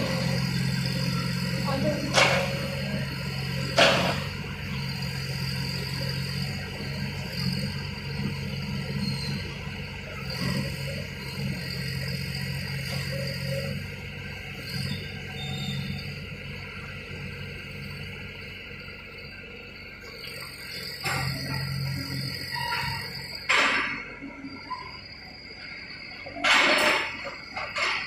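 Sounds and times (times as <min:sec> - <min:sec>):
diesel engine running: 0:00.0 - 0:28.0
metal clanks: 0:26.3 - 0:28.0.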